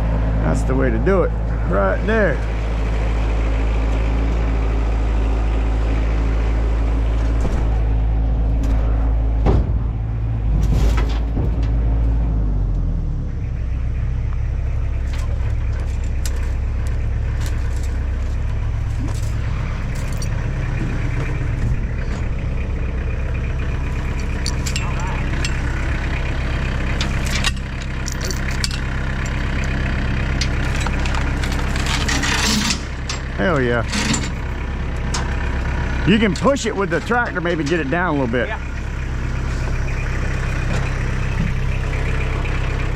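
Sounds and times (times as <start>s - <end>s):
tractor engine running: 0.0s - 42.9s
metal clanks: 8.5s - 12.2s, 15.0s - 22.8s, 23.6s - 37.9s.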